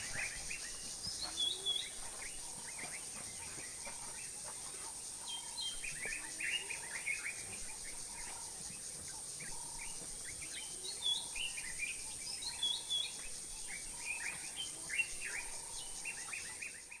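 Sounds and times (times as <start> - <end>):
birds chirping: 0.0 - 17.0.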